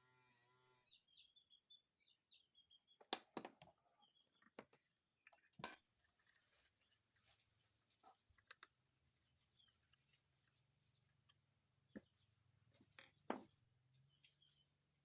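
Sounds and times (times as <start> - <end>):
small electric motor humming: 0.0 - 0.9
faint bird chirps: 13.8 - 14.8.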